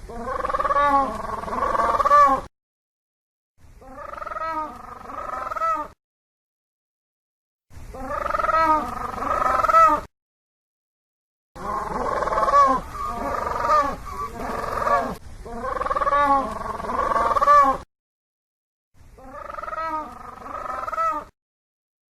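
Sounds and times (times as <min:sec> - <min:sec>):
penguin calling loudly: 0:03.8 - 0:06.0, 0:08.0 - 0:10.1, 0:11.6 - 0:17.8, 0:19.2 - 0:21.3.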